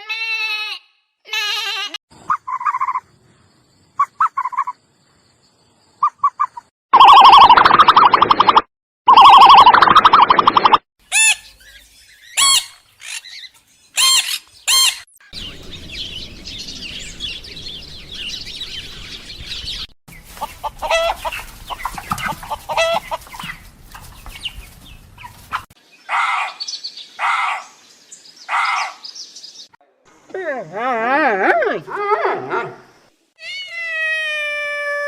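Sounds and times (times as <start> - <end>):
chickens clucking and squawking: 2.2 - 3.1, 20.1 - 25.8.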